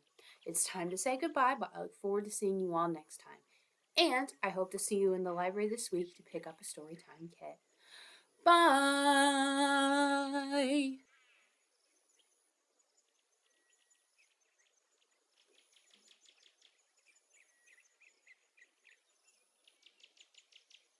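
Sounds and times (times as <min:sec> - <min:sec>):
person singing a farewell: 0:08.5 - 0:11.0
faint birdsong chirps: 0:09.9 - 0:20.9.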